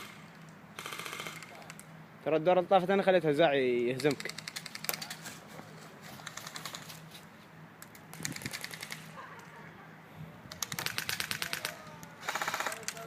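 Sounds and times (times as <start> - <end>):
airsoft guns firing bursts: 0.0 - 1.7, 6.2 - 6.9, 8.1 - 9.2, 10.5 - 13.0.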